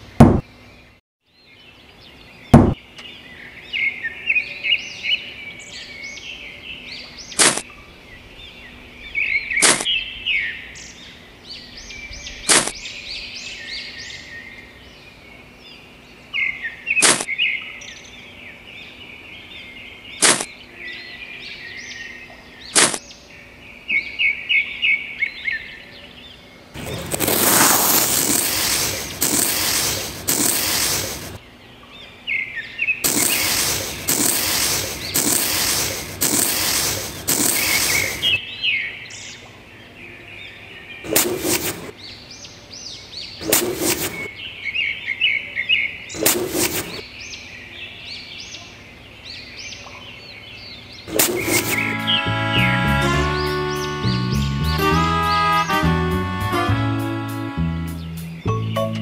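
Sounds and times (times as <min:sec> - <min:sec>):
small birds chirping: 0:00.0 - 0:55.8
loud rushing noise: 0:26.8 - 0:31.4, 0:33.1 - 0:38.4, 0:43.4 - 0:44.3, 0:46.2 - 0:47.0, 0:51.1 - 0:52.3.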